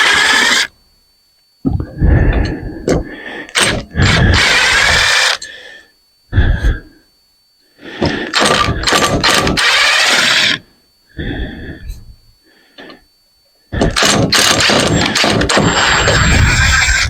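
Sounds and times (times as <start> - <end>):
handheld power tool running: 0.0 - 0.7, 3.5 - 5.5, 8.0 - 10.7, 13.8 - 17.0.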